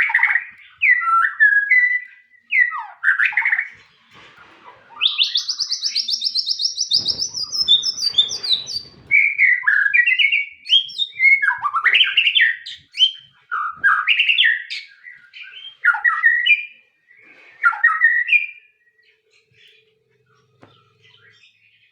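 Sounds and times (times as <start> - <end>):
bird trilling and whistling: 4.8 - 16.7.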